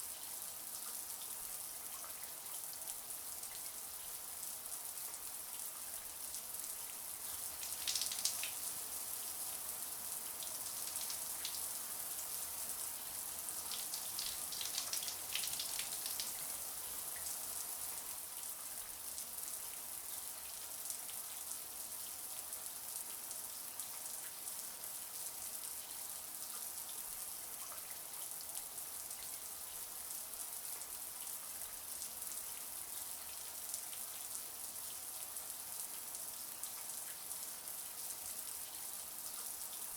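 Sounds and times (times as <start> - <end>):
shower running: 7.2 - 9.5, 10.2 - 12.0, 13.0 - 17.3.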